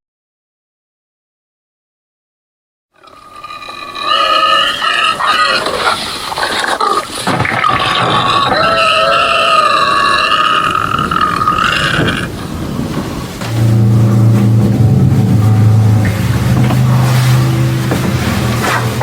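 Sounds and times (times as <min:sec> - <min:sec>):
high-pitched wavering squeal: 0:13.4 - 0:19.0.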